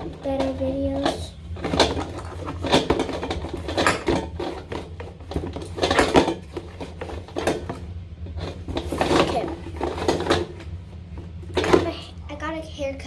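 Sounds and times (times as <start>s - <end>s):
plastic containers clicking and knocking: 0.0s - 7.8s.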